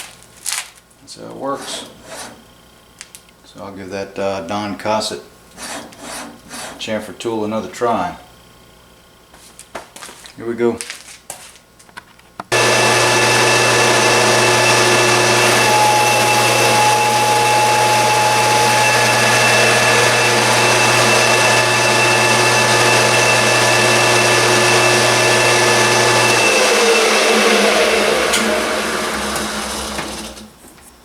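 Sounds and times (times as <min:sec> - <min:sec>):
mill-drill motor humming: 0:01.3 - 0:02.8, 0:12.5 - 0:30.6
whining tones: 0:12.5 - 0:30.5.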